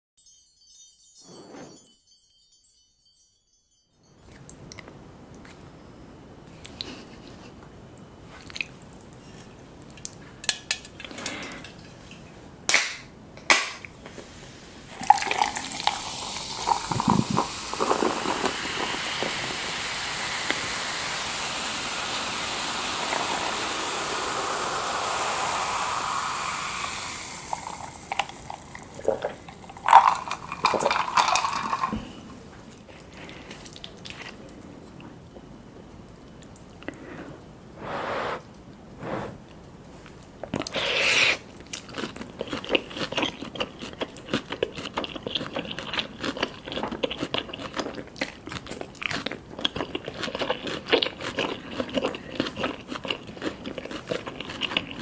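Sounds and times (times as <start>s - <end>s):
dishes and utensils clinking: 9.2s - 12.4s
drink pouring into a glass: 14.9s - 32.2s.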